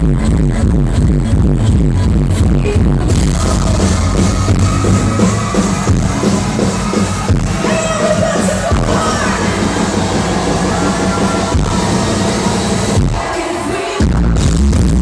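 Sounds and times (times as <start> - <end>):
loud electronic dance music: 0.0 - 15.0
person singing: 7.5 - 14.3.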